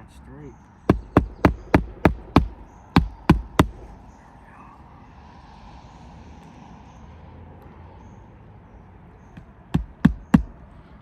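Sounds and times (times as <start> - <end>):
hammer striking roofing nails: 0.9 - 4.0, 9.7 - 10.6.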